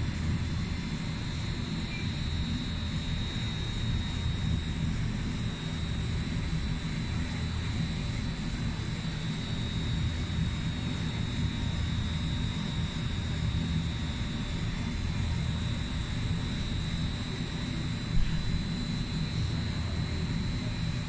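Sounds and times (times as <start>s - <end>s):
faint high whine: 0.0s - 21.0s
low machinery hum: 0.0s - 21.0s.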